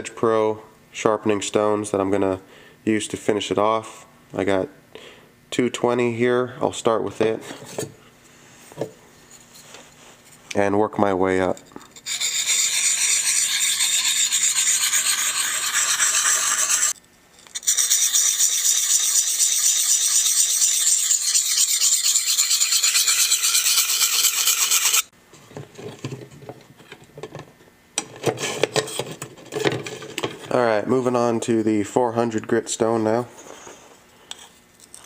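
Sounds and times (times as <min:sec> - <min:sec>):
sharpening stone rasping on knife: 0:12.0 - 0:25.0.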